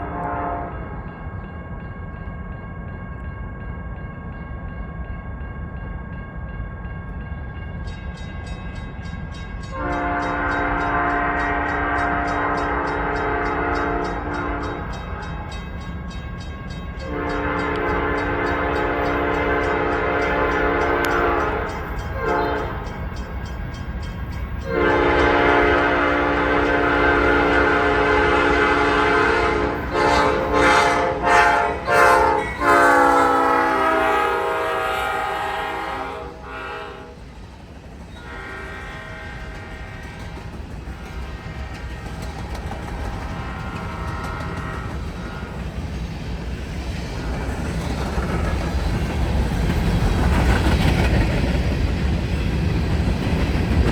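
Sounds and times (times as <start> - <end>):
locomotive air horn blasts: 0.0 - 0.9, 9.7 - 15.5, 17.0 - 22.8, 24.6 - 37.2, 38.2 - 40.1, 43.3 - 45.6
rail cars clickety-clack: 0.0 - 53.9
train rumbling past: 0.0 - 53.9.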